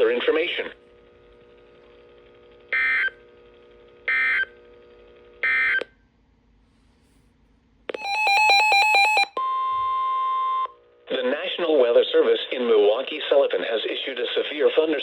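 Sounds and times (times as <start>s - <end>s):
electronic tone: 8.0s - 10.7s.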